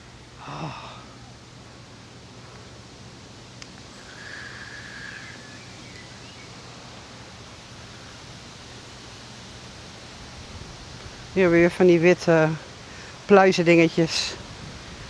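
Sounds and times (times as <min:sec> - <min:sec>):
wind and rustling: 0:00.0 - 0:15.0
high bird-like call: 0:04.0 - 0:06.6
small bird chirps: 0:04.0 - 0:06.6.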